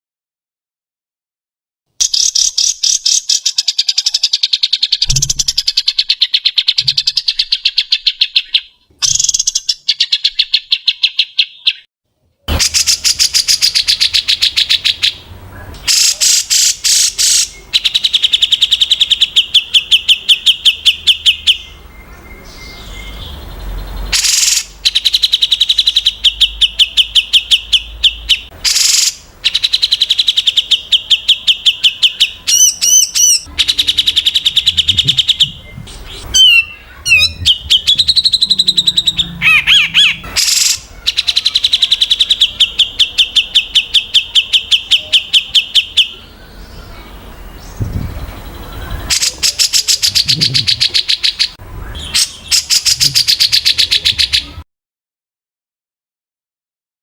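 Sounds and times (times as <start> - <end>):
songbird rapid repeated notes: 2.0 - 11.8, 12.5 - 21.8, 22.9 - 46.2
harsh bird call bursts: 12.5 - 21.9, 22.7 - 46.6, 48.6 - 54.6
warbled bird whistles: 24.2 - 46.2.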